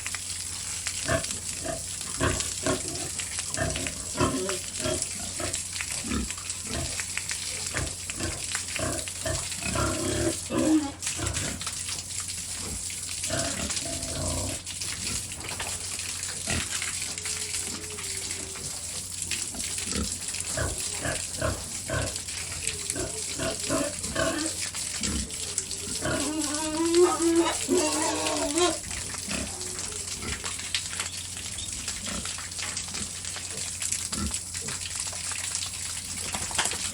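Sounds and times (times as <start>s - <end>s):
pigs grunting: 1.0s - 11.6s, 12.5s - 15.3s, 16.4s - 30.6s.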